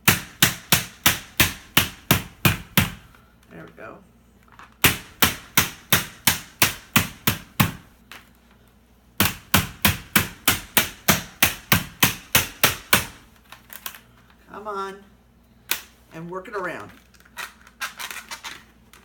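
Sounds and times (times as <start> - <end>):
rubber mallet hammering plastic: 0.0 - 3.1, 4.8 - 7.9, 9.2 - 13.3.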